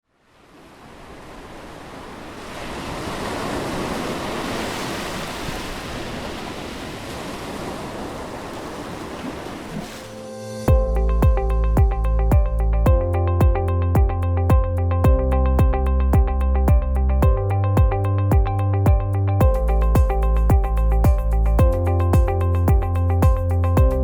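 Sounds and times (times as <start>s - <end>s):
ocean surf rushing: 0.2s - 10.7s
music with strong beat: 10.7s - 24.0s.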